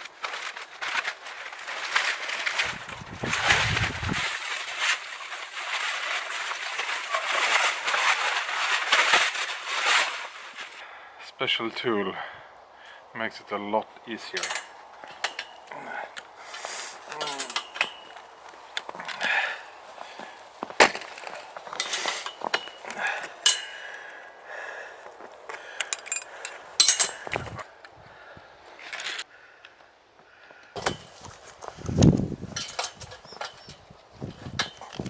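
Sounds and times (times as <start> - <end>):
metallic clicks and clinks: 25.8 - 27.4.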